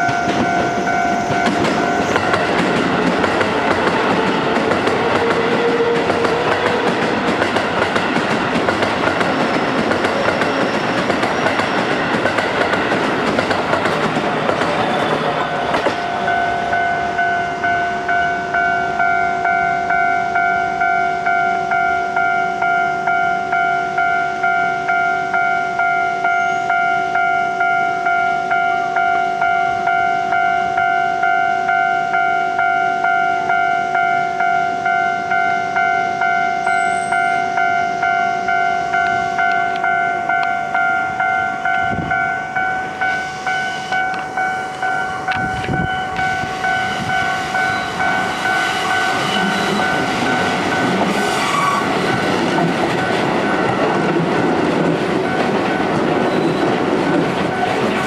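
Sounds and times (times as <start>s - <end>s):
level crossing alarm bell: 0.0s - 6.9s, 15.4s - 51.3s
electric train passing: 0.0s - 58.0s.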